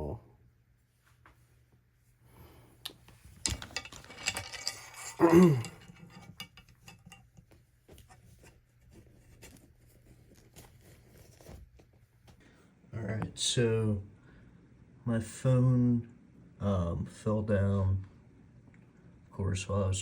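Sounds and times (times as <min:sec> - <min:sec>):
handling clicks and rustling: 0:02.9 - 0:12.4.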